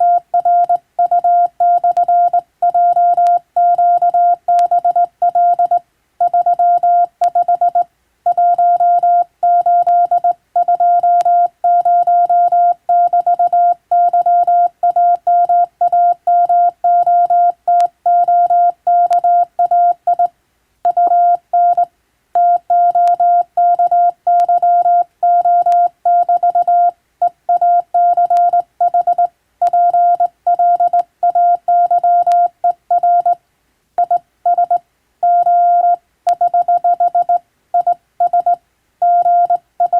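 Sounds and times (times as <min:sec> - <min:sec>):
morse code beeps: 0:00.0 - 0:20.3, 0:20.9 - 0:33.4, 0:34.0 - 0:39.9
faint clicks: 0:28.2 - 0:29.8.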